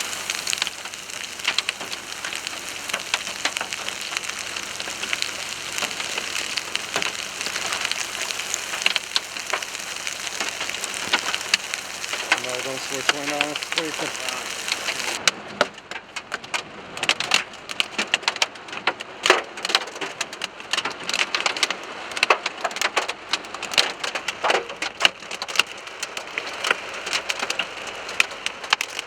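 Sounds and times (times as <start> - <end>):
heavy rain hiss: 0.0 - 15.3, 20.8 - 29.0
hailstones pelting a car: 0.0 - 29.0.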